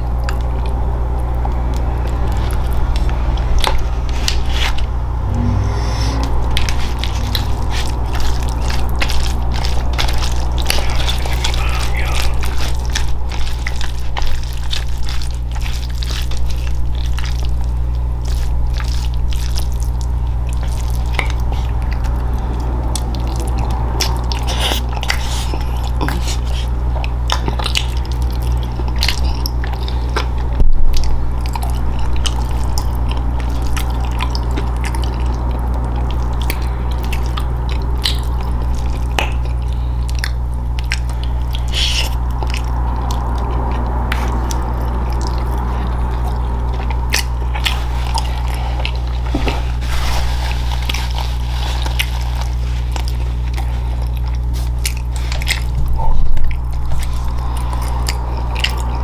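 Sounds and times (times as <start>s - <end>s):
close chewing and crunching: 0.0s - 59.0s
steady low hum: 0.0s - 59.0s.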